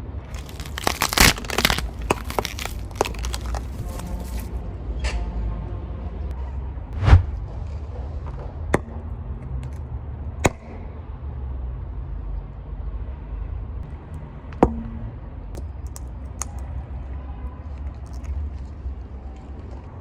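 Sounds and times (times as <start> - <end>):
objects cracking under tyres: 0.3 - 4.6, 15.5 - 16.7, 17.6 - 19.8
car rolling with low rumble: 5.7 - 20.0.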